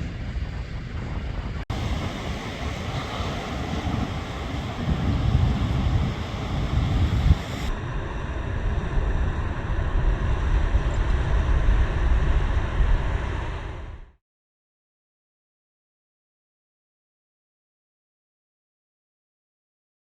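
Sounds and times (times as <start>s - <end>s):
wind buffeting microphone: 0.0s - 14.1s
surf breaking: 1.7s - 7.7s.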